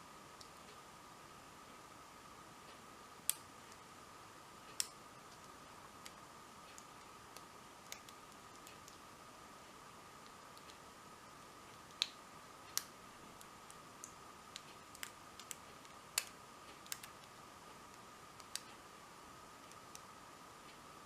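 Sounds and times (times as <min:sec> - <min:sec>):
faint high whine: 0:00.0 - 0:21.0.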